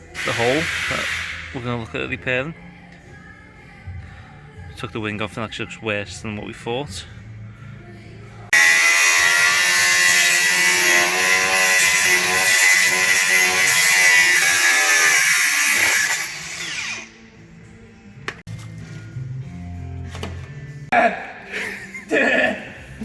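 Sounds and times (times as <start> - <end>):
angle grinder on steel: 8.5 - 17.1.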